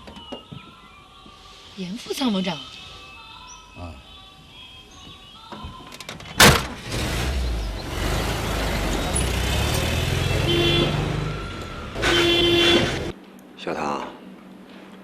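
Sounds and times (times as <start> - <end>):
car engine running and moving off: 6.4 - 13.1
short car horn: 10.4 - 11.2, 12.0 - 13.1.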